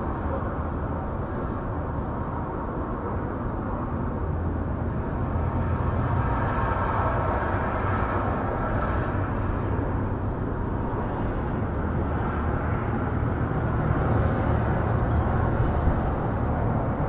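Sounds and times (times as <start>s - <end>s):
outdoor rumble and hiss: 0.0s - 17.0s.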